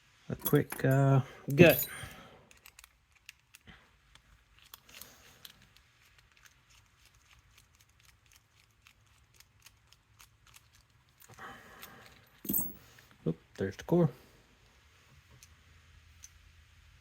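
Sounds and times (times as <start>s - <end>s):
padlock parts clicking: 0.4s - 12.7s.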